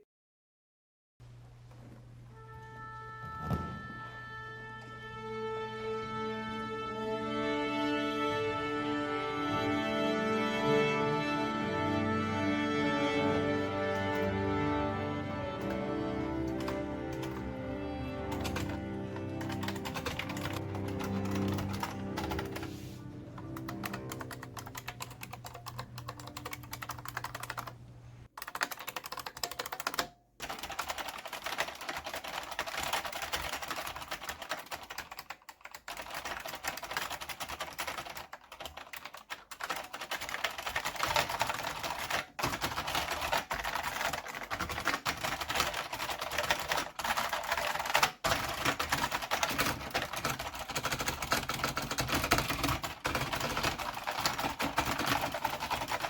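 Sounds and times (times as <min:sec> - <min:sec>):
clicky keyboard typing: 0:15.4 - 0:22.7, 0:23.4 - 0:27.8, 0:28.4 - 0:56.0.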